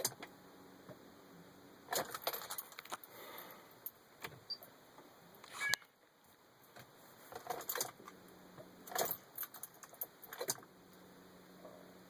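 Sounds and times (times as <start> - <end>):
faint steady hum: 0.0 - 12.0
sharp clicks of keys in ignition: 8.9 - 10.6.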